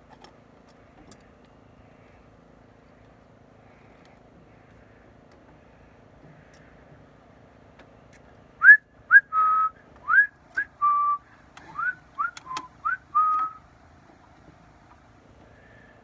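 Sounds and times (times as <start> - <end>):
person whistling a tune: 8.6 - 11.2, 11.8 - 13.6
sharp clicks: 11.6 - 12.7.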